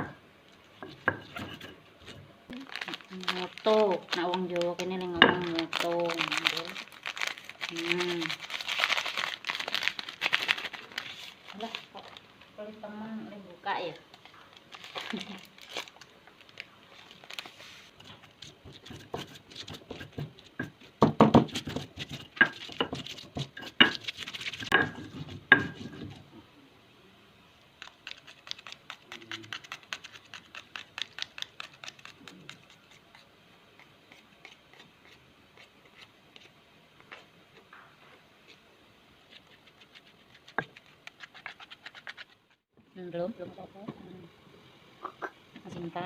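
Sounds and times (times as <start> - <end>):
pestle pounding in stone mortar: 18.7 - 26.1.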